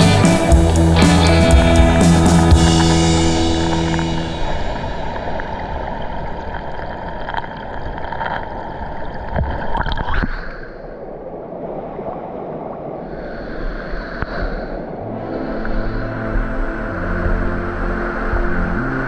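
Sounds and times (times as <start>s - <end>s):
background music with drums: 0.0s - 4.8s
rushing water of waterfall: 2.4s - 10.3s.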